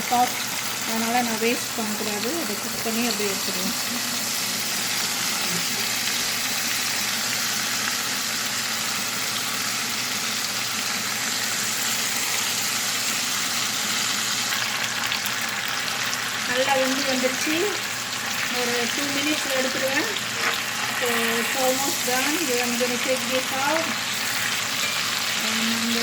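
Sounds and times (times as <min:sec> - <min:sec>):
chicken sizzling in a pan: 0:00.0 - 0:26.0.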